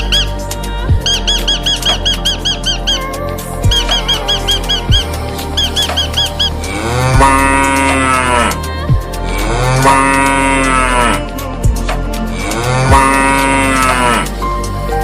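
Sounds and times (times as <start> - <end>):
cow mooing: 6.6 - 8.6, 9.6 - 11.3, 12.5 - 14.3.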